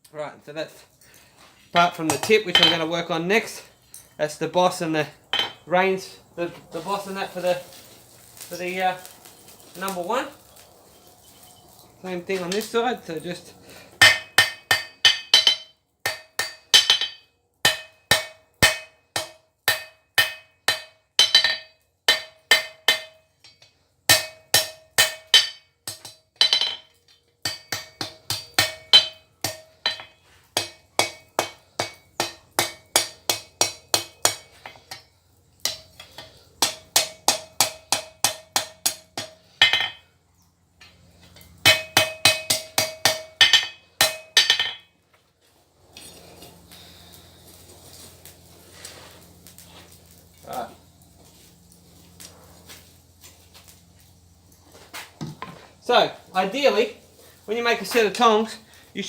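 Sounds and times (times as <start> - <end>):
hammer striking steel on anvil: 1.8 - 3.0, 5.3 - 5.6, 14.0 - 40.0, 40.8 - 44.9.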